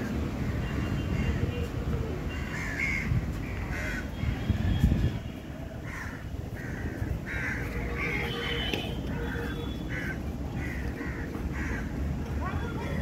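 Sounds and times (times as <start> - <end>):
bird cawing: 5.8 - 12.0.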